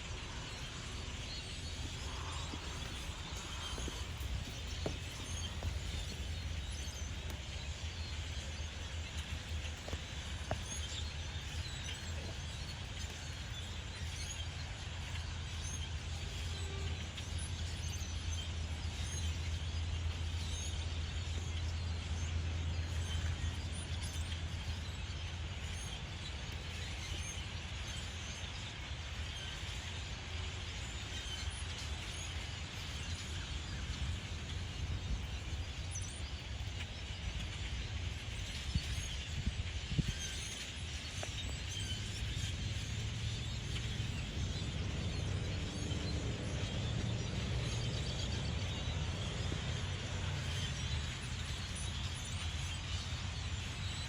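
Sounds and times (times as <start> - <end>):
birds chirping: 1.3 - 13.6, 33.9 - 54.0.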